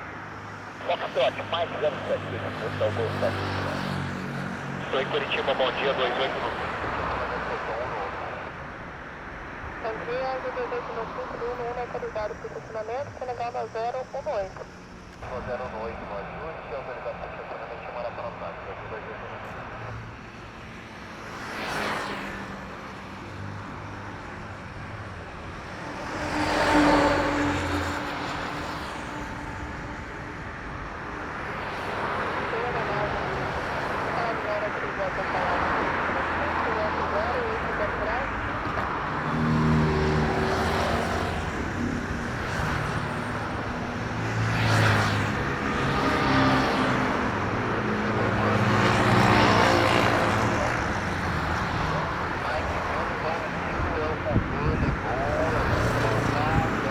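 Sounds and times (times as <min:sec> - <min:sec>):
jet engines rumbling: 0:00.0 - 0:39.1
vehicles passing: 0:00.0 - 0:56.9.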